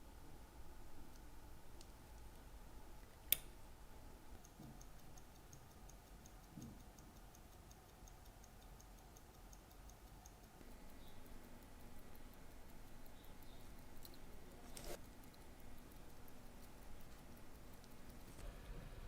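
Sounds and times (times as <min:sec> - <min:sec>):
watch ticking: 0:04.3 - 0:18.5.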